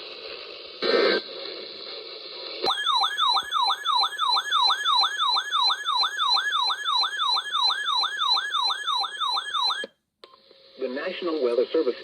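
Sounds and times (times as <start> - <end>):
radio hiss: 0.0 - 2.6, 10.6 - 12.0
electronic yelp siren: 2.7 - 9.9.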